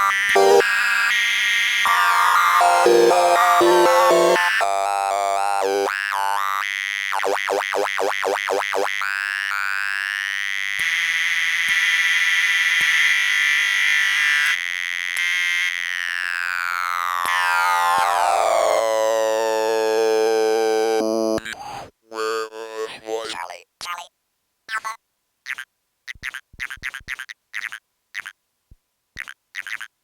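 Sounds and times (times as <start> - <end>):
buzzy synthesizer tone: 0.0 - 0.8, 1.9 - 5.9, 17.3 - 21.5.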